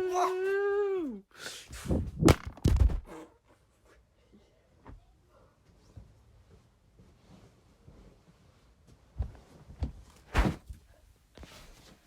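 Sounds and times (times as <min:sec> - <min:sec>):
person yelling high-pitched: 0:00.0 - 0:01.2
thumps: 0:02.2 - 0:03.1.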